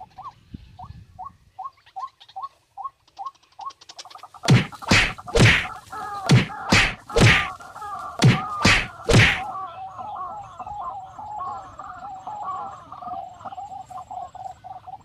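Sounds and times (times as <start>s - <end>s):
heavy whacks: 4.5s - 7.6s, 8.2s - 9.5s.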